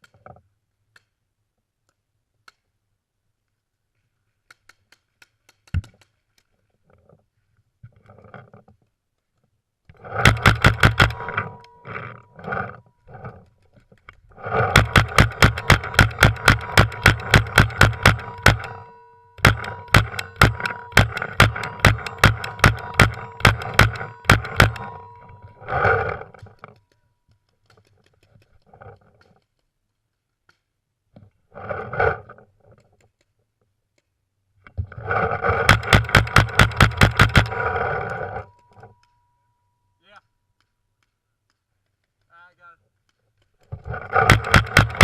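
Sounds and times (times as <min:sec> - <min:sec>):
faint clicks: 0:00.0 - 0:01.2, 0:04.4 - 0:06.7, 0:25.3 - 0:31.3, 0:40.6 - 0:44.6
airsoft gun full-auto bursts: 0:10.0 - 0:11.5, 0:14.6 - 0:18.8, 0:19.4 - 0:25.0, 0:35.6 - 0:37.8, 0:43.9 - 0:45.0
steady whine: 0:10.0 - 0:13.4, 0:14.4 - 0:26.7.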